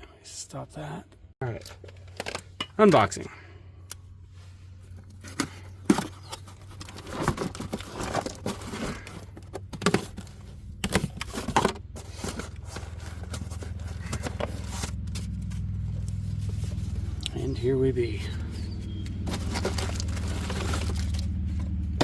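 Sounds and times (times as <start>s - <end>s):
cardboard packaging tearing: 5.9s - 15.5s, 19.2s - 21.5s.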